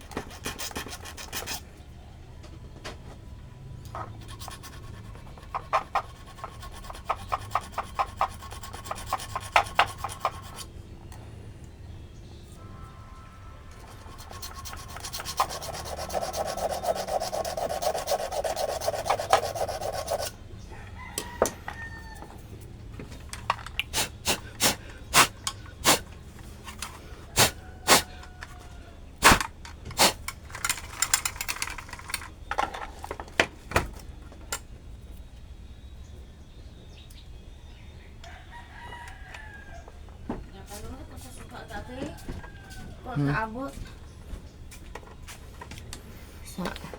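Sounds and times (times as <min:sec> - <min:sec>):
rasping scrapes: 0:00.0 - 0:01.7, 0:04.0 - 0:10.7, 0:13.8 - 0:20.4
rooster crowing: 0:20.6 - 0:22.4, 0:27.3 - 0:29.1, 0:38.2 - 0:40.0, 0:41.8 - 0:43.3
clicks and knocks of hard objects: 0:23.0 - 0:24.0, 0:29.2 - 0:34.7.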